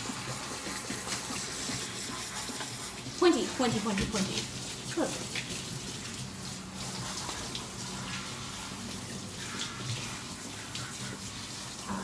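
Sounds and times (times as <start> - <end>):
tap running into bathtub: 0.0 - 7.8.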